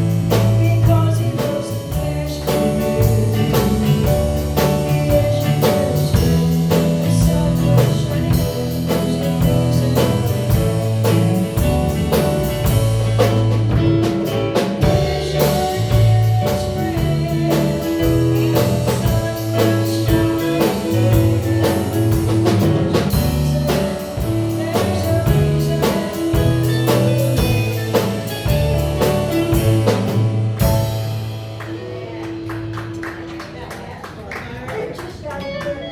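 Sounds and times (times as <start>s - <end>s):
bass notes and chords: 0.0s - 33.4s
drum kit beat: 0.0s - 33.9s.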